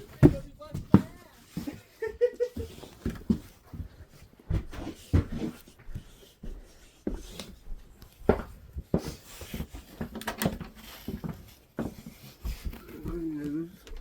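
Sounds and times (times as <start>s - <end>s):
thumps and knocks: 0.0s - 1.7s
footsteps indoors: 0.0s - 14.0s.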